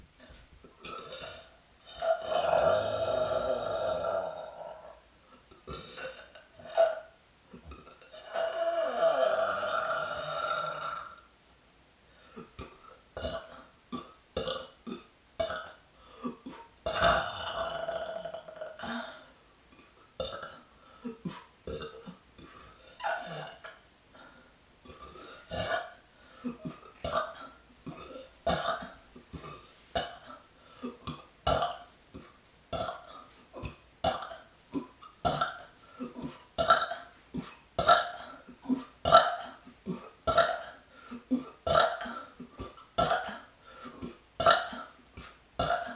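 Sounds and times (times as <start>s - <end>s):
woman burping: 0.8s - 5.0s, 5.7s - 11.2s, 12.6s - 23.8s, 24.8s - 45.0s, 45.6s - 45.9s.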